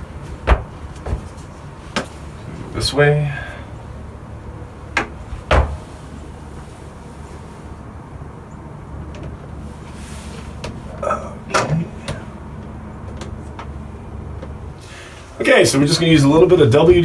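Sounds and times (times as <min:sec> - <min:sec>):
low steady hum: 0:00.0 - 0:17.0
sharp knocks and clicks: 0:05.0 - 0:05.8
window screen frame handled: 0:09.0 - 0:14.6.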